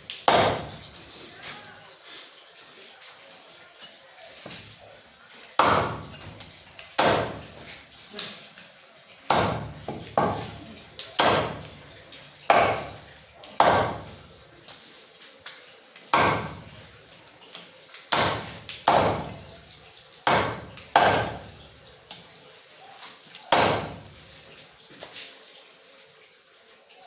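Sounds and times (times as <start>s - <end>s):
cleaver chopping on wooden block: 0.2s - 0.9s, 5.6s - 6.3s, 7.0s - 7.6s, 9.3s - 10.6s, 11.2s - 11.7s, 12.5s - 13.0s, 13.6s - 14.1s, 16.1s - 16.6s, 18.1s - 19.4s, 20.3s - 21.5s, 23.5s - 24.0s.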